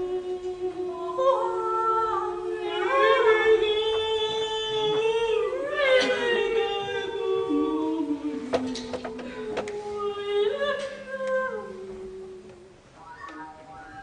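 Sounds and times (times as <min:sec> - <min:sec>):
voices holding sustained notes: 0:13.0 - 0:14.0.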